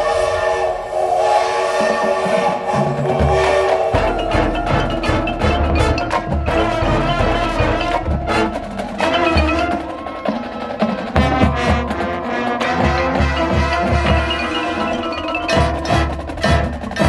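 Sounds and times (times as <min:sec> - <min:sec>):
brass and wind chords: 0:00.0 - 0:17.0
sharp percussion clicks: 0:03.9 - 0:17.0.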